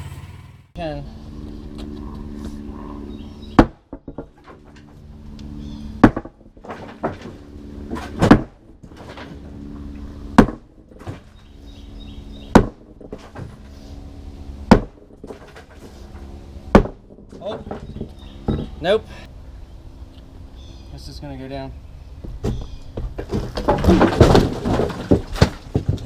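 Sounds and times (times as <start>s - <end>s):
excavator engine running: 0.0s - 0.8s.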